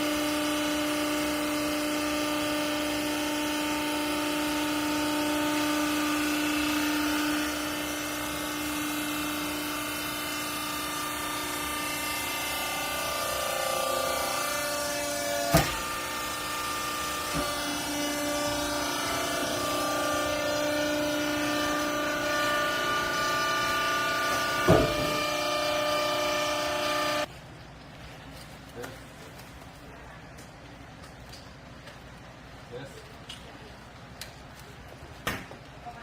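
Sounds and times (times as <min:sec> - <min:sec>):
electric motor and pump whining: 0:00.0 - 0:27.3.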